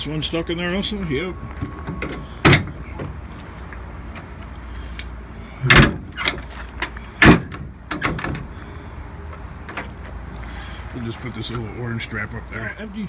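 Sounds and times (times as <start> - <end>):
metal knocks and clanks: 1.6 - 3.2, 5.6 - 8.6
loud metal bangs: 2.0 - 3.2, 5.6 - 6.5, 7.2 - 8.6.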